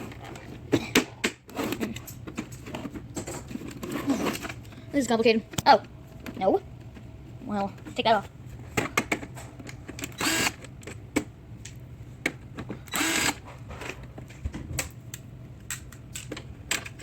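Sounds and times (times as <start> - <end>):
plastic parts clicking and knocking: 8.7 - 17.0.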